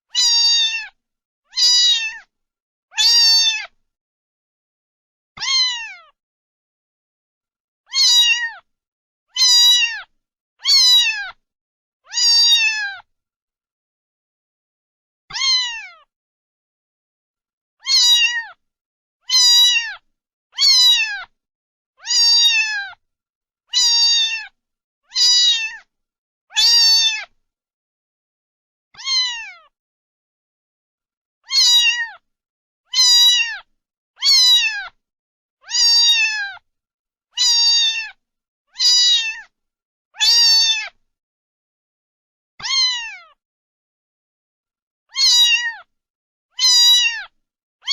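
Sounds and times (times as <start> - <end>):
cat meowing: 0.1 - 2.3, 2.9 - 3.8, 5.4 - 6.2, 7.9 - 8.7, 9.3 - 11.4, 12.1 - 13.1, 15.3 - 16.1, 17.8 - 18.6, 19.2 - 20.0, 20.6 - 21.3, 22.0 - 23.0, 23.7 - 25.9, 26.5 - 27.4, 29.0 - 29.7, 31.4 - 32.2, 32.9 - 35.0, 35.6 - 36.6, 37.4 - 39.5, 40.2 - 41.0, 42.6 - 43.4, 45.1 - 45.9, 46.5 - 47.9.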